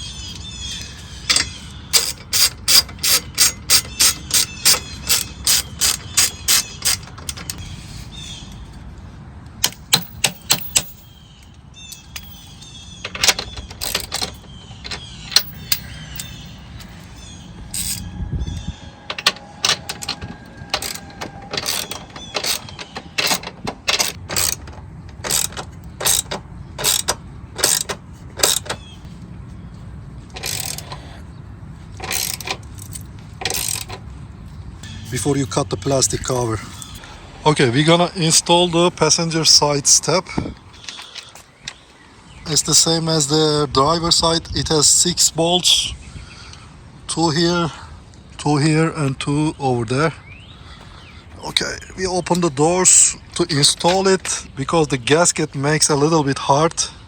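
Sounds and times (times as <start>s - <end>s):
ratchet wrench clicking: 1.3s - 7.6s, 9.6s - 11.2s, 12.0s - 16.9s, 17.7s - 18.1s, 19.1s - 28.8s, 30.4s - 31.0s, 32.0s - 34.0s.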